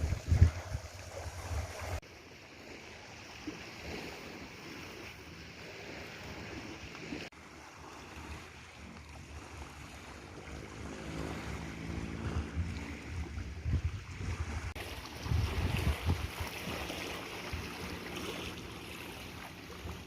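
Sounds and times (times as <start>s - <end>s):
wind buffeting microphone: 0.0s - 2.0s, 8.2s - 20.0s
sea waves washing: 0.0s - 20.0s.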